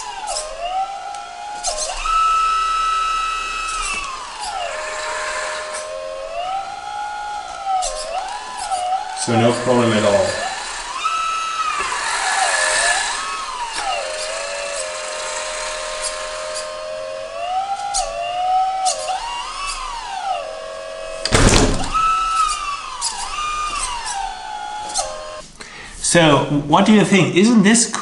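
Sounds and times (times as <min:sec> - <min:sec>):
hydraulic pump whining: 0:00.0 - 0:26.6
loud sharp knock: 0:21.3 - 0:22.1.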